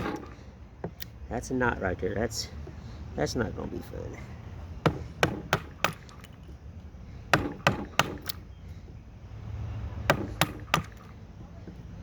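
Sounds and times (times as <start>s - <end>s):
hatchet chopping wood: 0.0s - 1.0s, 4.8s - 6.4s, 7.3s - 8.4s, 10.0s - 11.2s.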